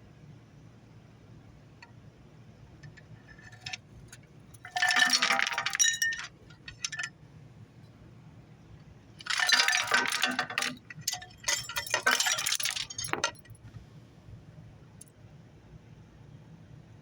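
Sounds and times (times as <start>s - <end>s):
bearing rattling metallically: 3.3s - 3.8s, 4.6s - 7.1s, 9.2s - 13.6s.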